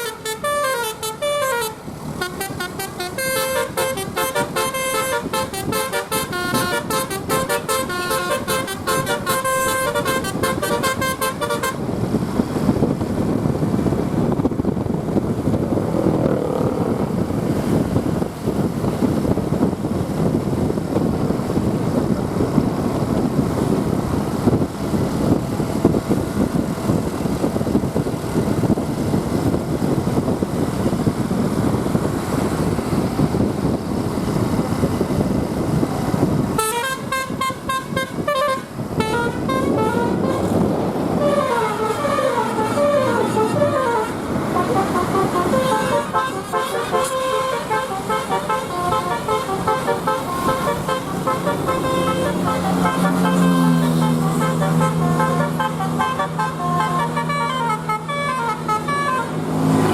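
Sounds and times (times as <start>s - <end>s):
musical bus horn notes: 0.0s - 12.0s, 36.5s - 59.9s
road noise: 0.0s - 59.9s
vehicle engine rumbling: 0.0s - 59.9s.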